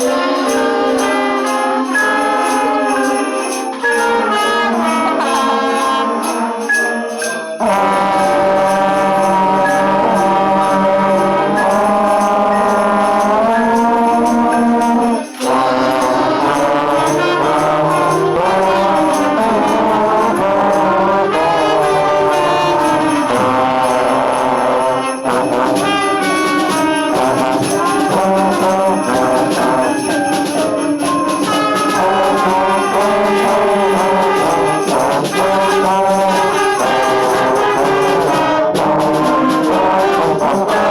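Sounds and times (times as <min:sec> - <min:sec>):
orchestral backing track: 0:00.0 - 0:40.9
sleigh bells ringing: 0:00.0 - 0:40.9
tambourine: 0:00.0 - 0:40.9
trombone melody: 0:00.0 - 0:40.9.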